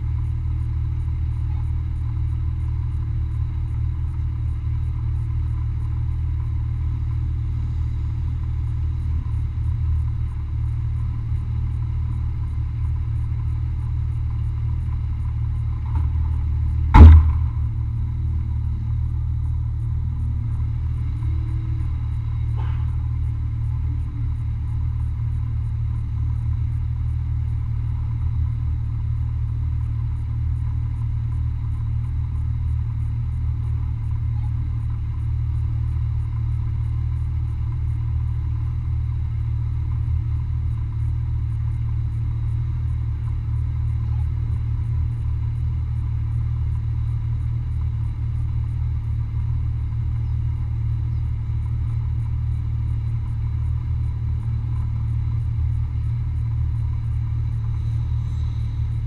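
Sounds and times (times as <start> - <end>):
vehicle engine rumble: 0.0 - 59.0
hard knock: 16.9 - 17.9.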